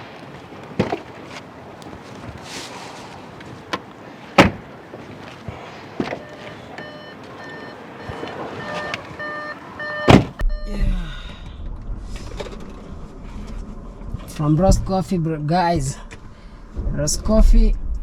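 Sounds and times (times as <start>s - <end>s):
car door thumping shut: 0.8s - 1.0s, 4.4s - 4.7s, 10.0s - 10.4s
car chime beeping rapidly: 6.2s - 10.8s
muffled low cabin hum: 10.0s - 15.2s.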